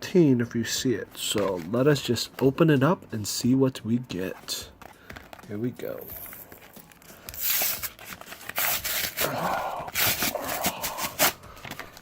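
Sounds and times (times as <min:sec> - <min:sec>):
plastic blister packaging crinkling: 0:04.6 - 0:12.0.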